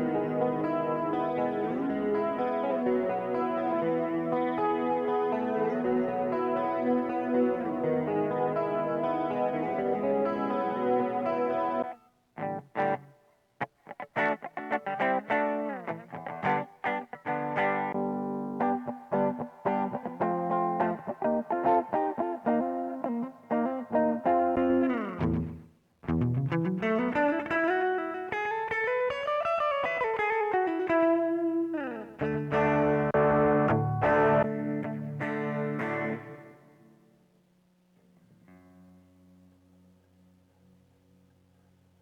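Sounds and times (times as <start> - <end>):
electric guitar chord: 0.0 - 12.7, 14.9 - 36.9
picked guitar notes: 0.0 - 13.2, 13.8 - 37.1.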